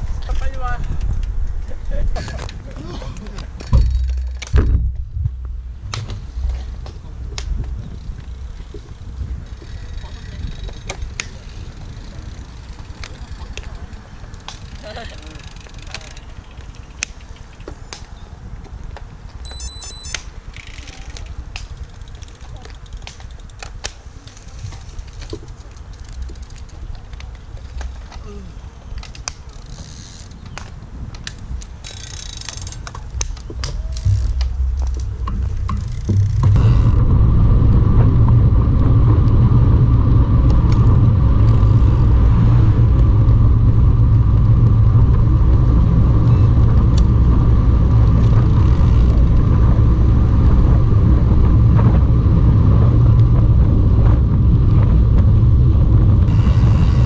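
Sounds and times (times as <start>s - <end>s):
wind rumbling on microphone: 0.0s - 57.0s.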